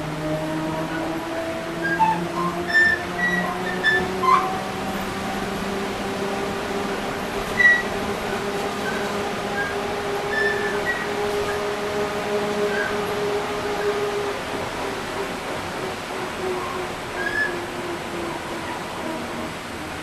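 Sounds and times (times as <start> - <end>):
joint creaking and squeaking: 1.8 - 4.6, 7.5 - 8.0, 8.8 - 11.6.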